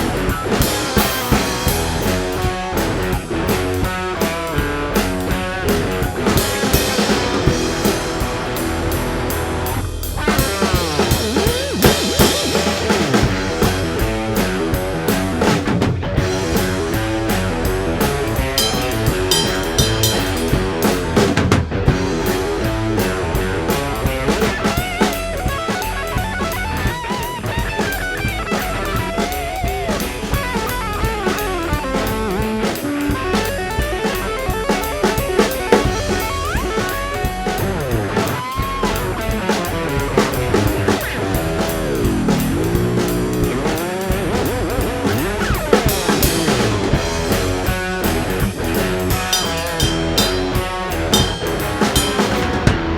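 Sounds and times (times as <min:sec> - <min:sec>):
drum kit steady beat: 0:00.0 - 0:52.9
rock guitar with bent notes: 0:00.0 - 0:52.9.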